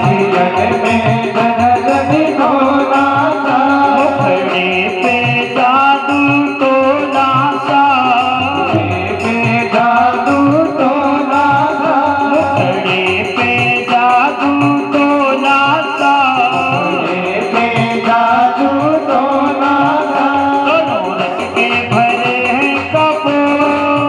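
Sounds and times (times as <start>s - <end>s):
hand drum beat: 0.0s - 24.0s
person singing: 0.0s - 24.0s.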